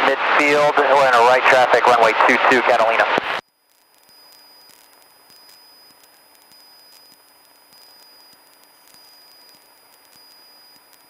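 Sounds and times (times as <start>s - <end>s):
radio static hiss: 0.0s - 11.0s
thin electrical whine: 0.5s - 11.0s
interference ticks: 2.4s - 11.0s.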